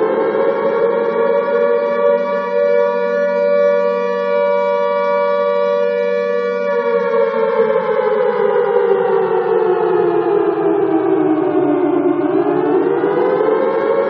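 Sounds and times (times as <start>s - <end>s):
alarm siren wailing: 0.0s - 14.0s.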